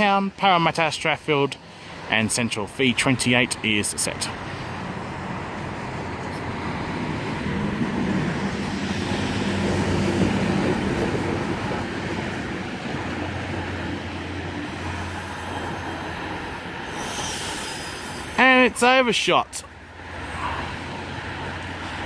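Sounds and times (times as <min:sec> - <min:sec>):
electric train running: 0:06.6 - 0:20.4
steady low hum: 0:12.6 - 0:19.0.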